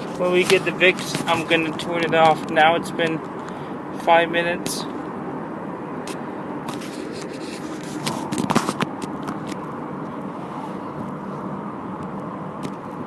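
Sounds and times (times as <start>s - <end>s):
scraping and clicking handling noises: 0.0s - 2.6s, 6.1s - 9.6s
car cabin road and engine noise: 0.0s - 13.0s.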